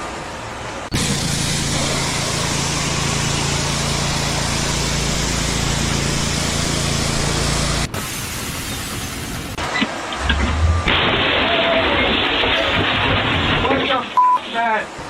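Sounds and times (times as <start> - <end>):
engine running steadily: 0.9 - 11.1.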